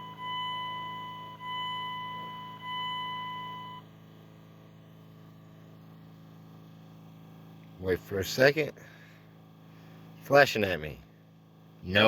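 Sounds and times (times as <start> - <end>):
dashboard warning chime: 0.0 - 3.9
steady low hum: 0.0 - 12.0.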